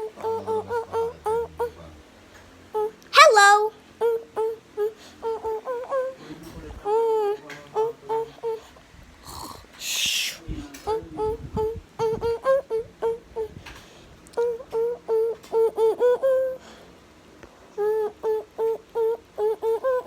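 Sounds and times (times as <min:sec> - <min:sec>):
person humming high notes: 0:03.2 - 0:03.7.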